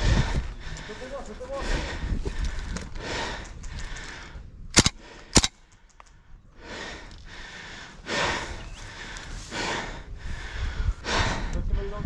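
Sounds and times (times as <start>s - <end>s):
person breathing heavily: 0.0s - 12.0s
airsoft gun shots: 4.8s - 5.6s.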